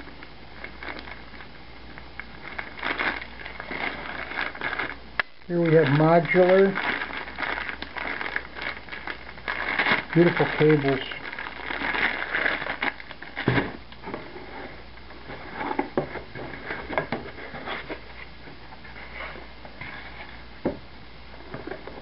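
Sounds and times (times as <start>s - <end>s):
plastic packaging rustling: 0.0s - 20.4s.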